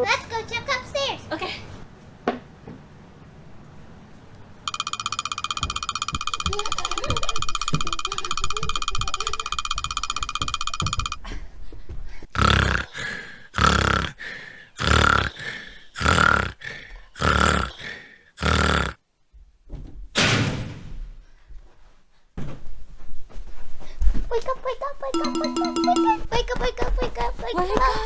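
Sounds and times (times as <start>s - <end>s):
man snoring loudly: 12.4s - 19.0s
steady tone: 25.2s - 26.4s.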